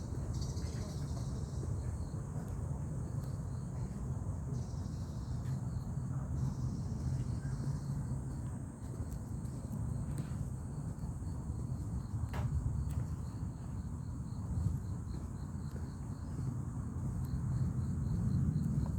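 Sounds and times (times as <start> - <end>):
insects buzzing chorus: 0.1 - 2.2.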